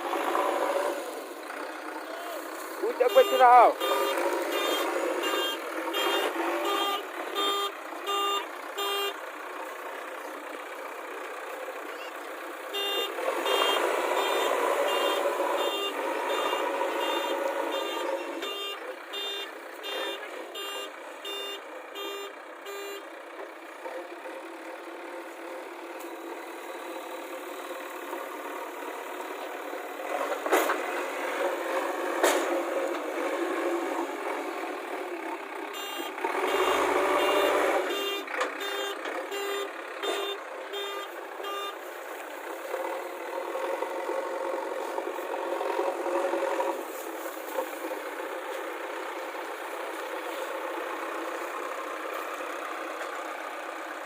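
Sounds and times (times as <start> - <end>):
backhoe loader engine running: 0.0 - 54.0
reversing alarm beeping: 2.9 - 9.2, 12.8 - 23.0, 35.8 - 41.8.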